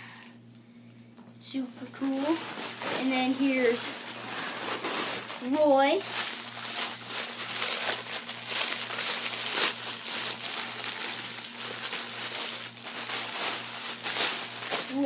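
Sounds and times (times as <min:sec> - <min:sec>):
plastic packaging crinkling: 0:01.8 - 0:15.0.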